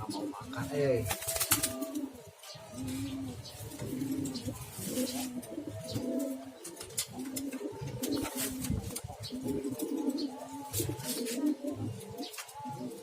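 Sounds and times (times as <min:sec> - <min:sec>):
pigeon cooing: 0:00.0 - 0:13.0.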